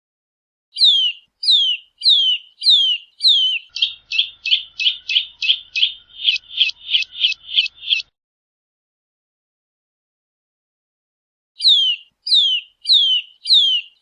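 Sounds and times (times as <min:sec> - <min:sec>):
bird calling: 0:00.8 - 0:08.1, 0:11.6 - 0:14.0.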